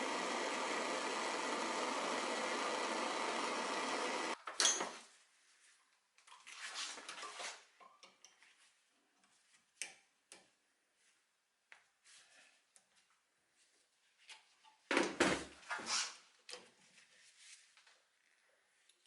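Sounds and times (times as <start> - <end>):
steady machine noise: 0.0 - 4.4.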